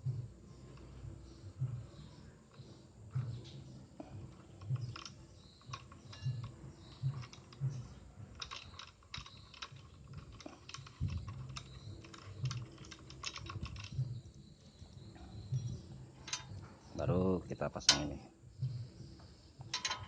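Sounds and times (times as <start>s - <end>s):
small metallic clicks: 0.5s - 17.1s, 17.7s - 18.2s, 19.2s - 20.0s.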